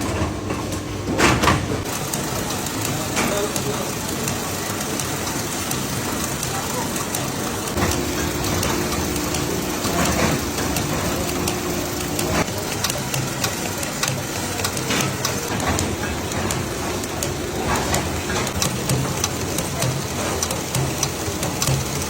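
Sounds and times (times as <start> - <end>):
factory machinery running: 0.0 - 22.0
steady hum: 6.8 - 12.7, 13.6 - 19.1
mechanical clicks and knocks: 7.7 - 22.0.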